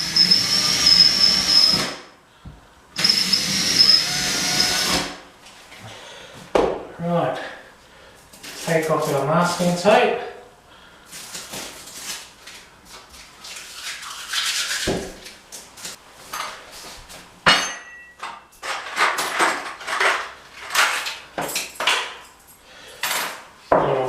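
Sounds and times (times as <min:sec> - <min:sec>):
sharp clink: 0:17.5 - 0:18.5.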